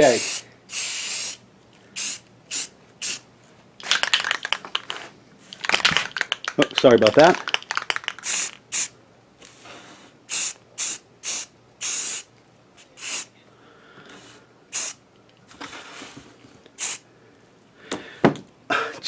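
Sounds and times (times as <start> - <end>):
aerosol spray can hissing: 0.0 - 1.4, 2.0 - 3.2, 8.1 - 8.9, 10.3 - 12.3, 13.0 - 13.3, 14.7 - 15.0, 16.8 - 17.0.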